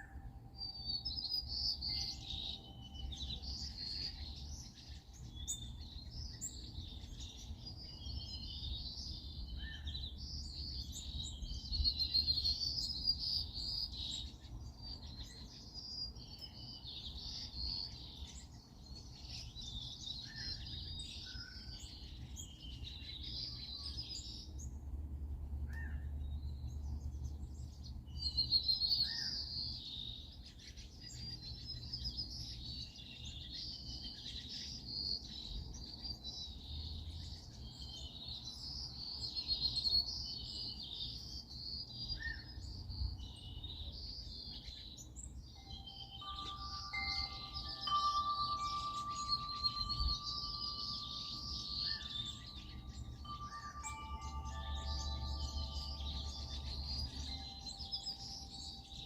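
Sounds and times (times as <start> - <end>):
small birds chirping: 0.0 - 59.0
low steady rumble: 24.1 - 28.6, 45.8 - 59.0.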